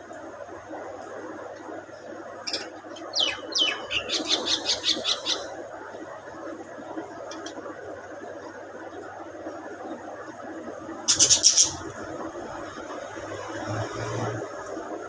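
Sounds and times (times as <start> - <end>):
low background noise: 0.0 - 15.0
budgerigar chirping: 2.5 - 5.6, 11.1 - 11.8.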